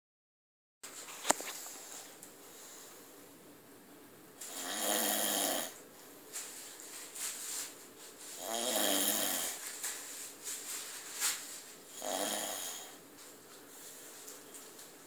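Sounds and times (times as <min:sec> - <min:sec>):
man snoring: 0:04.4 - 0:05.8, 0:08.4 - 0:09.6, 0:11.9 - 0:13.0.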